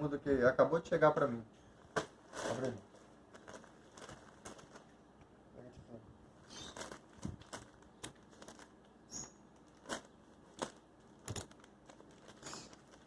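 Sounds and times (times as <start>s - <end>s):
package crinkling and crackling: 1.9s - 5.0s, 6.4s - 13.0s.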